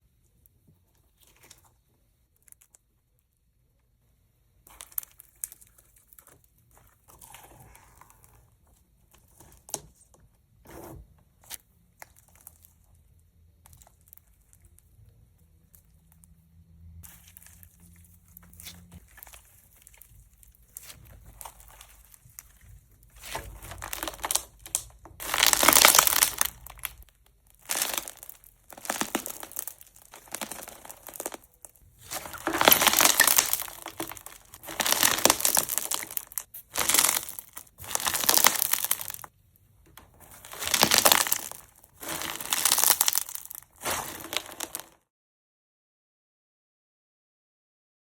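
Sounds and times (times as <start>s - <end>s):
rustling crinkling bursts: 17.0s - 39.3s, 40.1s - 45.0s.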